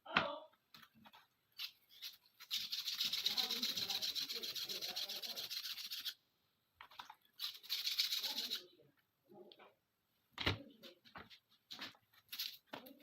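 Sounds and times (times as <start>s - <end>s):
hand scrubbing metal part: 1.6s - 6.2s.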